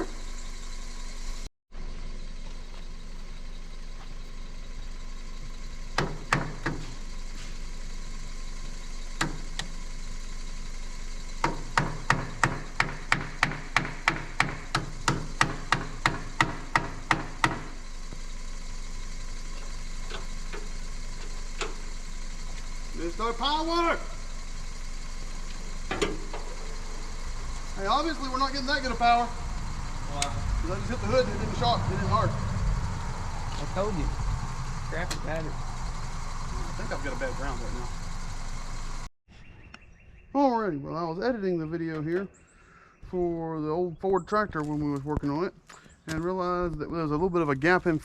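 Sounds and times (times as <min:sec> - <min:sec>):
steady low hum: 0:00.0 - 0:39.1
hammer striking metal: 0:11.4 - 0:17.7.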